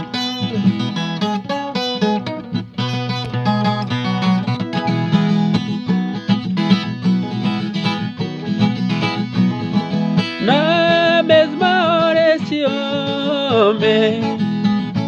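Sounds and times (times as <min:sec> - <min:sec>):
plucked guitar notes: 0:00.0 - 0:15.0
man singing: 0:10.4 - 0:14.6.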